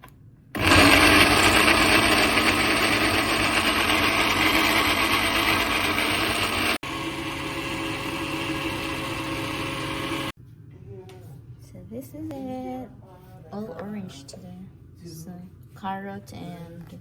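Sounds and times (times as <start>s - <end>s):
blender motor pureeing food: 0.6s - 10.3s.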